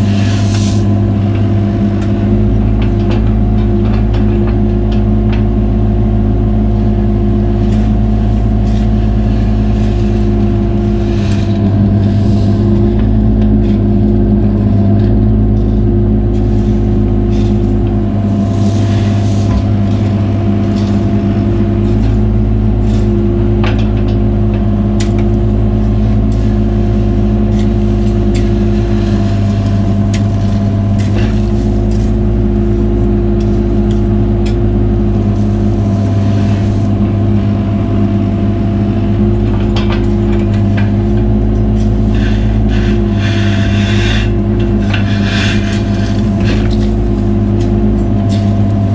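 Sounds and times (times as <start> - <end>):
excavator diesel engine running: 0.0 - 48.9
hydraulic whine: 0.0 - 48.9
sharp clicks and knocks: 39.4 - 48.8.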